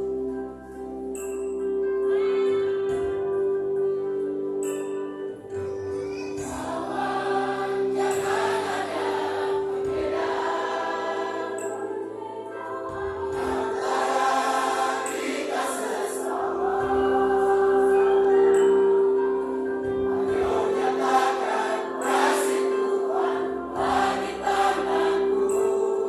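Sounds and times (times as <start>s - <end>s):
held accompaniment chords: 0.0s - 26.0s
choir singing: 6.1s - 26.0s.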